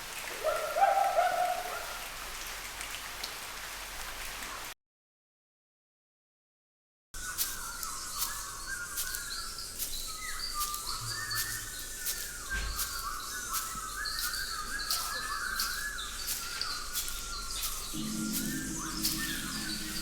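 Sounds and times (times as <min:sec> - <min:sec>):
bird-like chirping: 0:07.2 - 0:20.0.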